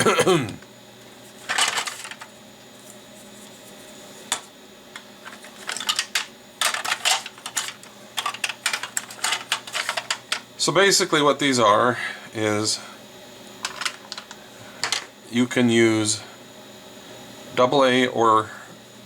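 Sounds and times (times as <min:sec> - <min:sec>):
plastic shells clattering: 0:01.5 - 0:02.3, 0:05.2 - 0:10.4.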